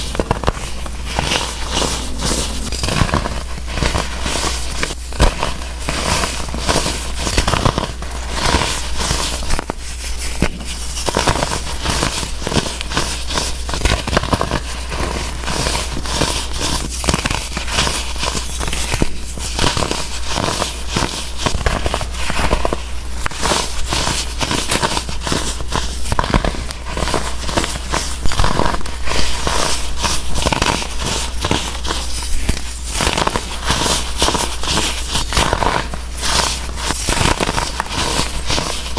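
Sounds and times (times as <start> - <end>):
dried baking soda crunching: 23.4 - 38.9.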